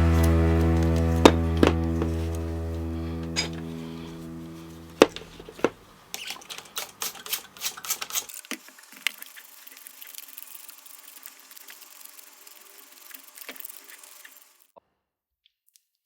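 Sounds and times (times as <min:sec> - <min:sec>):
background music: 0:00.0 - 0:05.4.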